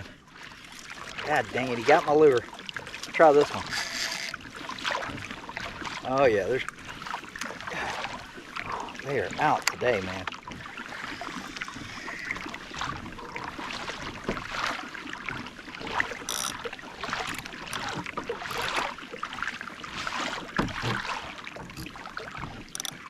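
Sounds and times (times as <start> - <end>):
water splashing against kayak hull: 0.0 - 23.0
knocks on kayak hull: 20.5 - 21.1.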